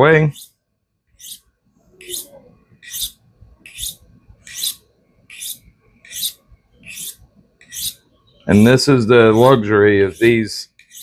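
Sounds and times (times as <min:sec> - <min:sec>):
blade hissing on sharpening rod: 0:02.0 - 0:08.0.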